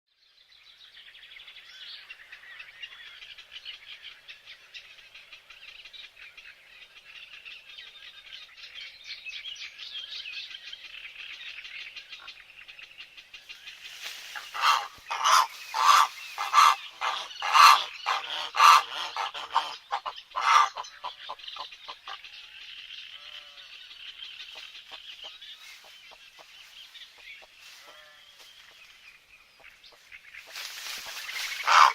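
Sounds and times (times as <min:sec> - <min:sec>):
flock of birds chirping: 0:00.1 - 0:31.9
loud harsh bird calls: 0:14.1 - 0:22.5, 0:30.4 - 0:31.9.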